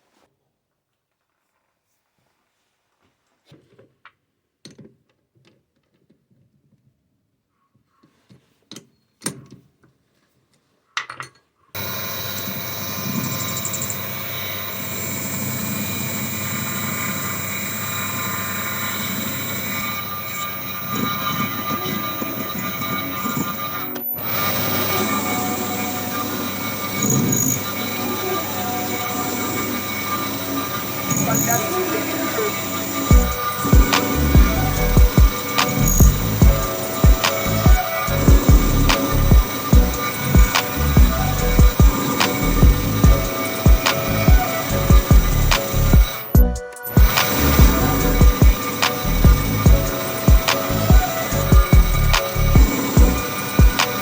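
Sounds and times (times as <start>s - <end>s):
metal lathe motor whining: 11.8s - 54.0s.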